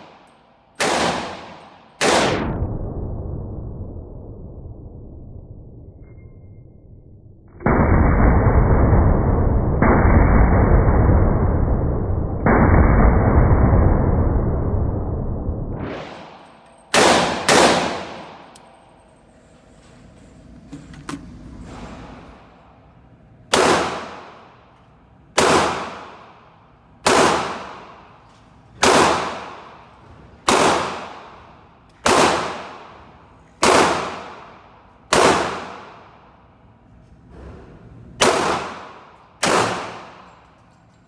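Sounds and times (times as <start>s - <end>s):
pistol shots echoing: 0.0s - 2.4s, 16.1s - 18.6s, 23.5s - 24.6s, 25.4s - 26.3s, 27.0s - 28.1s, 28.8s - 36.4s, 38.2s - 40.5s.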